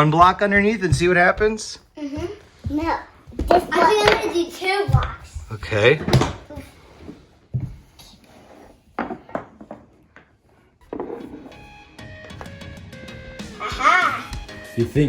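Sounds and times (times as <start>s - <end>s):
background music: 10.8s - 15.0s.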